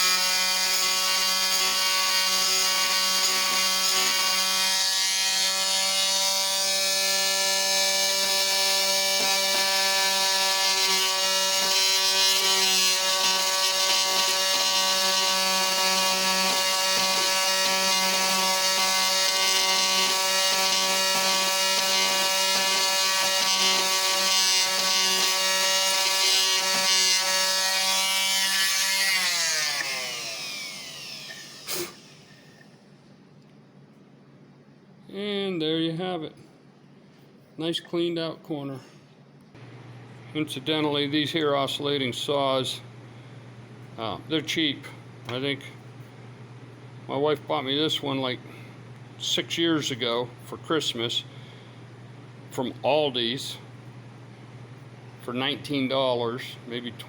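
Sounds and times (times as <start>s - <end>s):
oscillating multi-tool buzzing: 0.0s - 32.7s.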